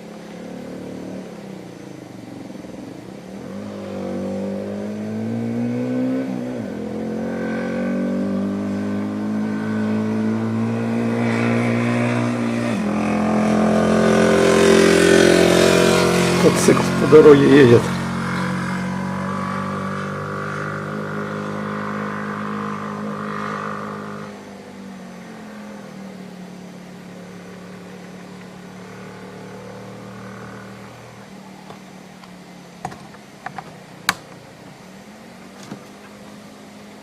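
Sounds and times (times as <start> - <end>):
motorcycle engine passing: 0.0 - 36.1.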